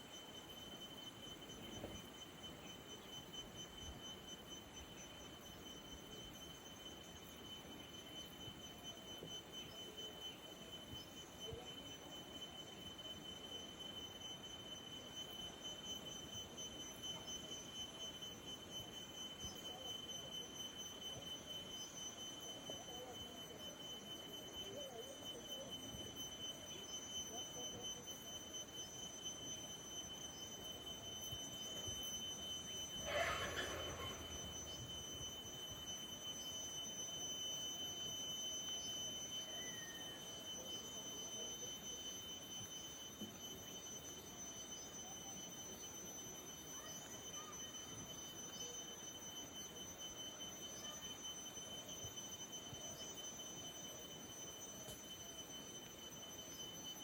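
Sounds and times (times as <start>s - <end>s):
steady high-pitched whine: 0.0s - 57.0s
faint low murmur: 30.8s - 35.9s
faint short chirp: 32.8s - 35.7s.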